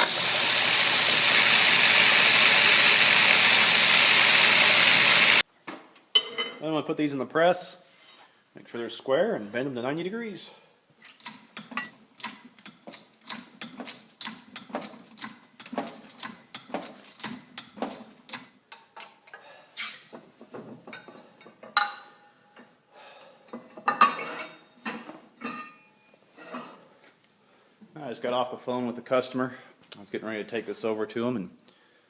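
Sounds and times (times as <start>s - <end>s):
ringing metal clanks: 25.4s - 26.1s.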